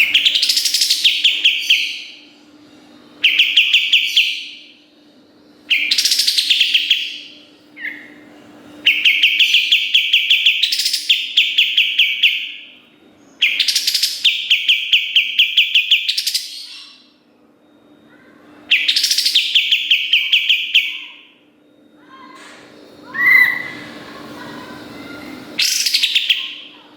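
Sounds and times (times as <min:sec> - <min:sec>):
bird singing rapid repeated notes: 0:00.0 - 0:02.2, 0:03.2 - 0:04.8, 0:05.6 - 0:08.2, 0:08.8 - 0:12.7, 0:13.3 - 0:17.2, 0:18.7 - 0:21.4, 0:23.1 - 0:26.9
faint steady hum: 0:00.0 - 0:26.9.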